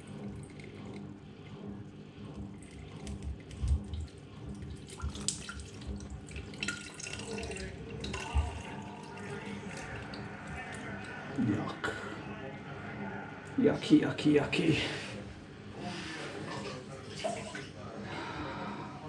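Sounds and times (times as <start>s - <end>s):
water splashing in a sink: 0.0s - 1.5s, 2.3s - 11.4s.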